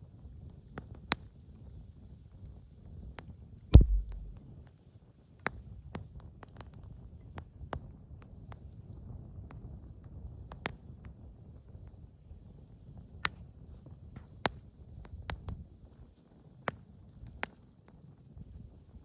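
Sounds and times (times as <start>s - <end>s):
fire crackles and pops: 3.7s - 4.4s, 5.7s - 18.5s.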